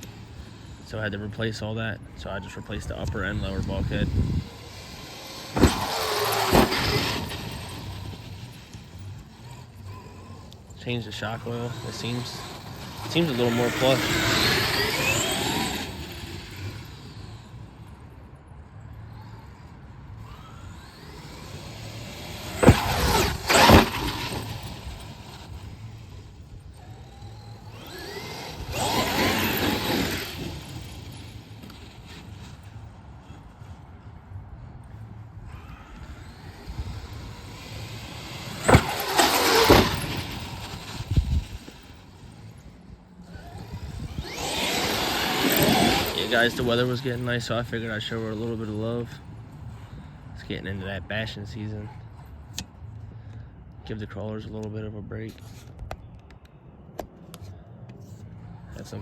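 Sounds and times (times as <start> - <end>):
electric motor whining: 0.0 - 18.0, 18.9 - 33.4, 35.3 - 49.0
tyres running over ground: 0.0 - 59.0
sharp thumps: 3.1 - 9.6, 20.7 - 26.2, 36.0 - 42.0.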